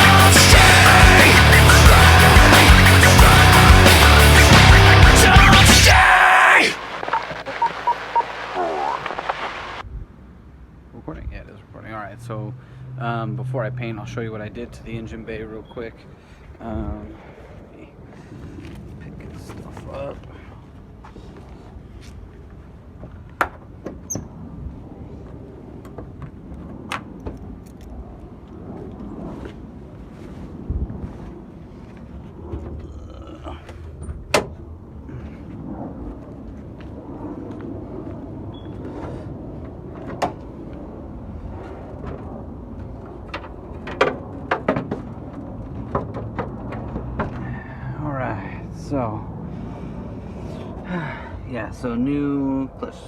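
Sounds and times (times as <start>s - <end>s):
steady low rumble: 0.0s - 6.2s.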